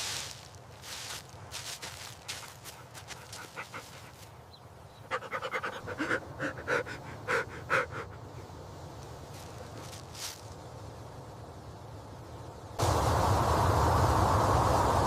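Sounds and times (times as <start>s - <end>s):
puppy panting: 2.4s - 4.3s, 5.1s - 8.4s.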